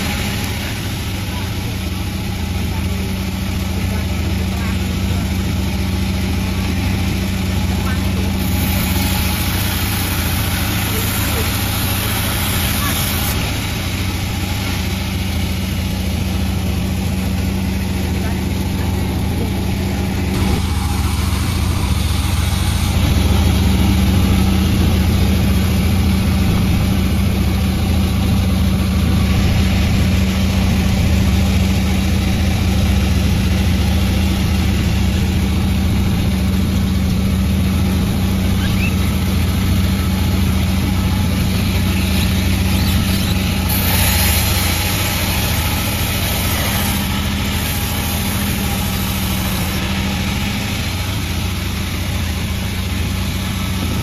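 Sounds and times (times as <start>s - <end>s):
sawmill humming: 0.0s - 54.0s
bright hiss: 8.4s - 16.4s, 40.7s - 53.8s.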